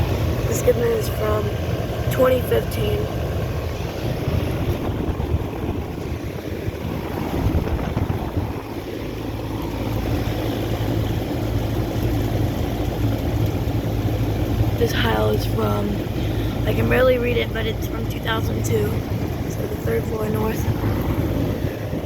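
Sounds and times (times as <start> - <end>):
compressor hum: 0.0 - 22.0
condenser fans rushing: 0.0 - 22.0.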